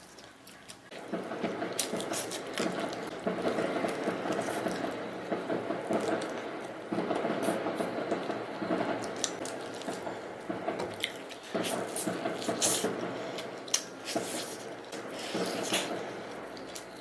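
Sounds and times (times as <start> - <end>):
person chewing wetly: 0.0 - 1.0
mouth smacks and clicks: 13.6 - 14.7.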